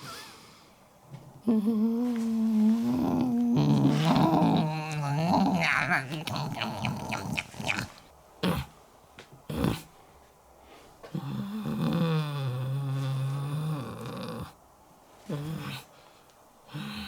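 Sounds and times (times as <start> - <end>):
comic voiced snoring: 1.4 - 8.7, 9.5 - 9.9, 11.2 - 14.6.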